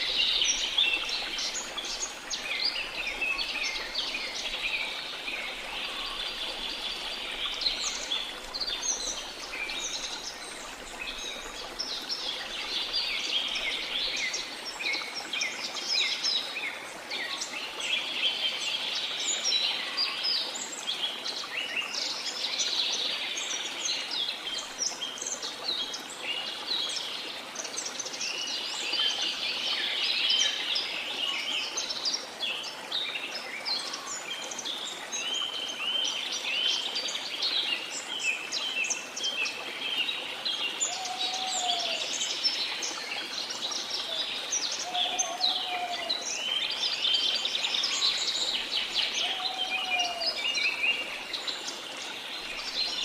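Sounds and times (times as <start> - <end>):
birds chirping and trilling: 43.8 - 53.0.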